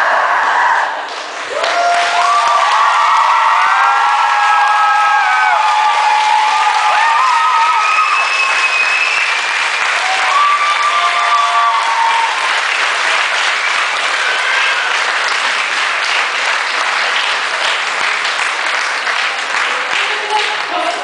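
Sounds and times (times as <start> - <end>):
whoops and cheers: 0.0 - 12.6
audience applauding: 1.0 - 21.0.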